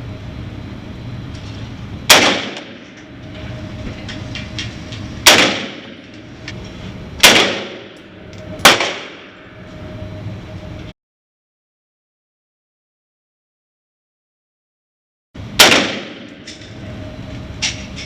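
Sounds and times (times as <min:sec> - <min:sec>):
gunshots: 0:02.1 - 0:02.8, 0:05.2 - 0:06.0, 0:07.2 - 0:08.0, 0:08.6 - 0:09.4, 0:15.6 - 0:16.3.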